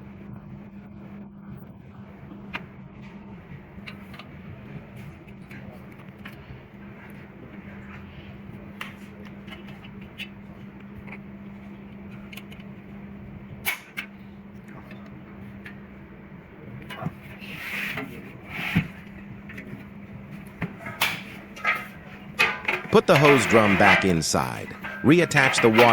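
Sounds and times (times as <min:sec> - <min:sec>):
scraping rub: 0:20.8 - 0:25.9.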